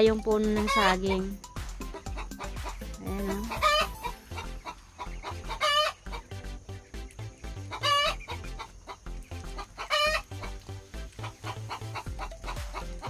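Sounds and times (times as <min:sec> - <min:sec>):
poultry calling loudly: 0:00.6 - 0:13.0.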